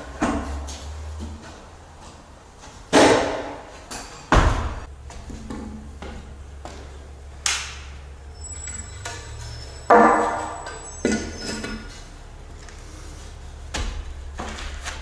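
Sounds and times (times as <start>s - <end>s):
knocks and thuds on wood: 4.3s - 6.8s.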